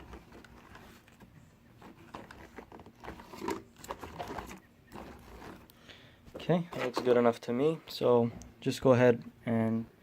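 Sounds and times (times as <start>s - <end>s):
cloth rubbing plastic: 0.0s - 5.7s.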